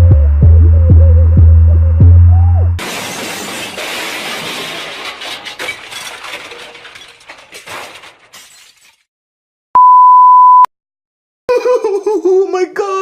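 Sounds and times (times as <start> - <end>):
glass shattering: 2.8 - 9.1
high beep: 9.8 - 10.7.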